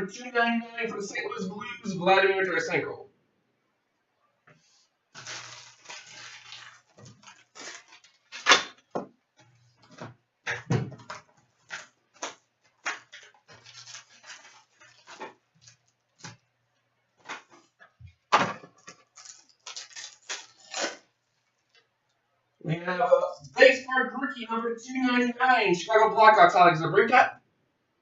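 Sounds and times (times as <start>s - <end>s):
wrapper tearing and crinkling: 5.1s - 8.9s, 11.2s - 16.4s, 18.8s - 21.8s.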